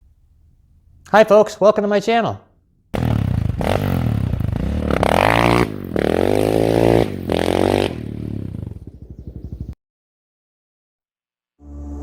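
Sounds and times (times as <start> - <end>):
dirt bike engine revving: 3.0 - 9.7.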